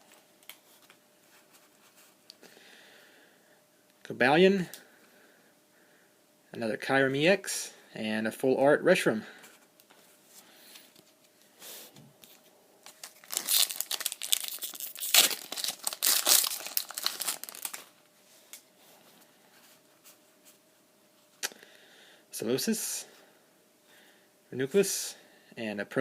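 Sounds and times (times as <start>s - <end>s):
foil pack tearing and crinkling: 12.9s - 17.9s.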